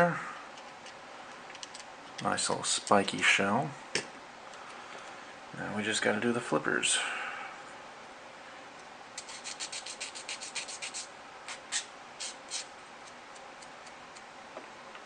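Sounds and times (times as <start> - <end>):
file rasping on plastic: 9.2 - 12.7.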